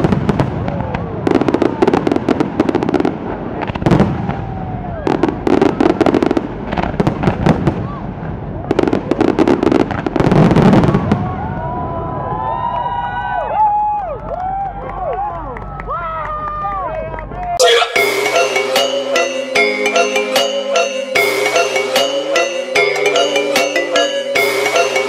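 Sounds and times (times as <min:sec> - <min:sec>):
fireworks crackling bangs: 0:00.0 - 0:11.4
spectators' voices: 0:17.6 - 0:25.0.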